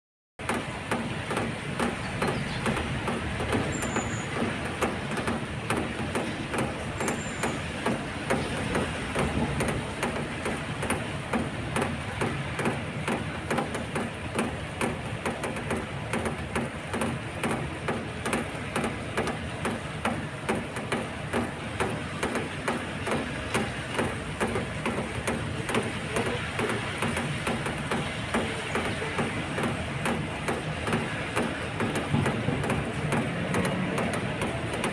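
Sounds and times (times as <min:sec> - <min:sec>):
rain tapping on an awning: 0:00.4 - 0:34.9
passing cars: 0:21.0 - 0:34.9.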